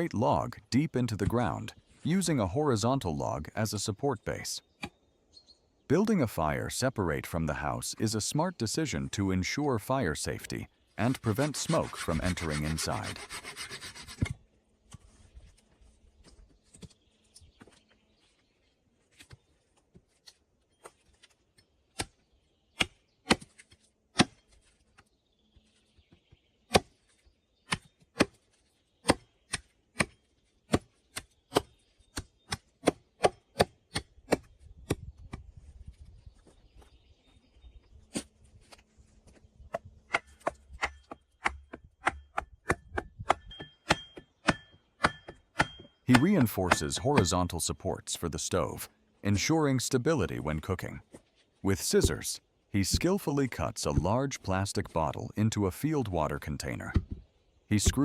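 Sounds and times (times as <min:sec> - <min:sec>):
hand tool striking wood: 0:40.1 - 0:47.3.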